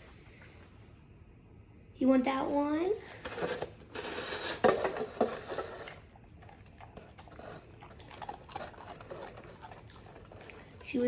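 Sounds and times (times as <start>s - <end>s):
dog chewing a treat: 4.1s - 11.0s.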